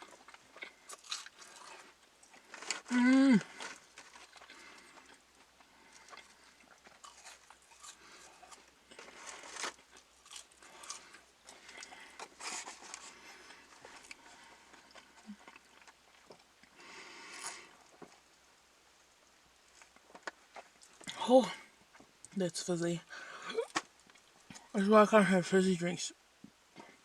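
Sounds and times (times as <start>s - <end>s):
person chewing and crunching: 0.0s - 18.3s, 19.7s - 21.2s.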